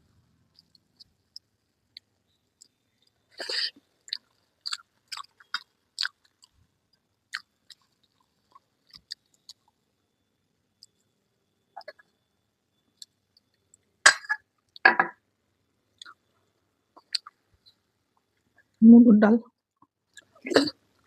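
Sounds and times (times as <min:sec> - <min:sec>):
person chewing with wet smacks: 0:00.5 - 0:06.6, 0:07.3 - 0:09.8, 0:11.8 - 0:12.1, 0:16.0 - 0:16.2, 0:17.0 - 0:17.4.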